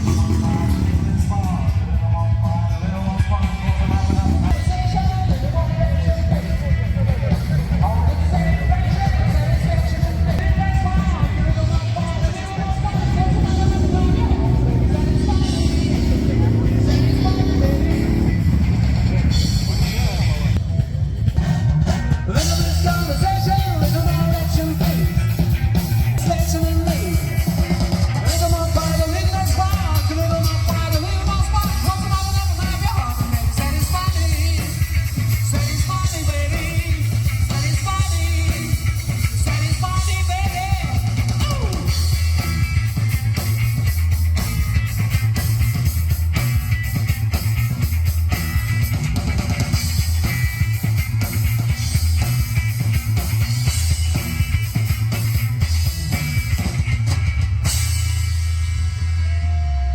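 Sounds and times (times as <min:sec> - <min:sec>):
person singing: 0:00.0 - 0:18.9, 0:22.2 - 0:42.1
loud rock music: 0:00.0 - 0:59.9.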